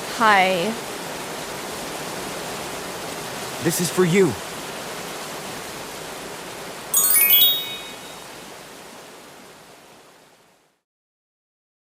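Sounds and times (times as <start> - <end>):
falling chime tones: 7.0 - 8.3.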